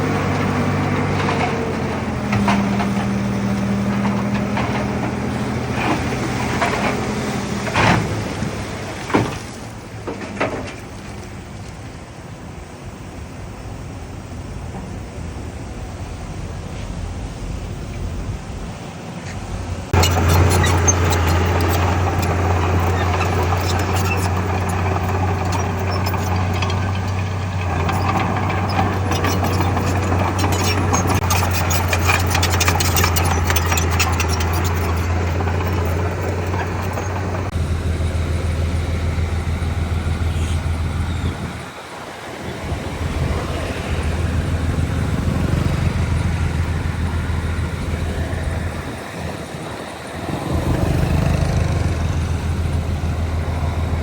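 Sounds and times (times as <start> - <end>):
heavy machinery diesel engine droning: 0.0 - 54.0
rattling and clatter: 19.9 - 37.6.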